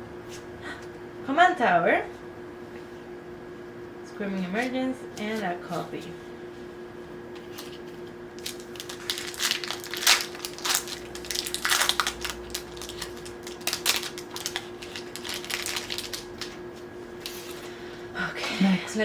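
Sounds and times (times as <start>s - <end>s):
foil wrapper crinkling and tearing: 7.4s - 16.6s, 17.2s - 17.7s.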